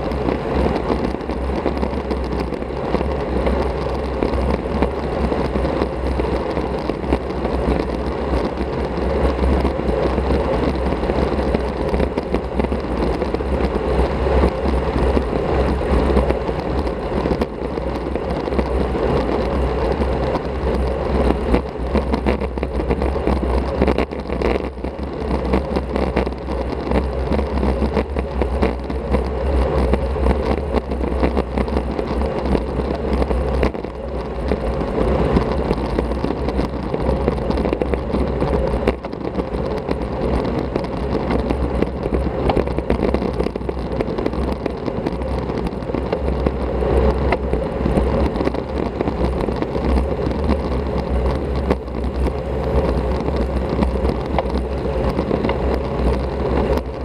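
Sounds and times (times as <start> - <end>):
road and tyre noise: 0.0 - 57.0.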